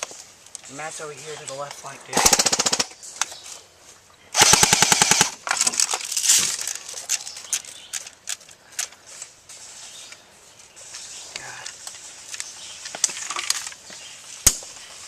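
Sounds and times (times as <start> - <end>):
airsoft rifle full-auto burst: 2.1 - 2.9, 4.4 - 5.4.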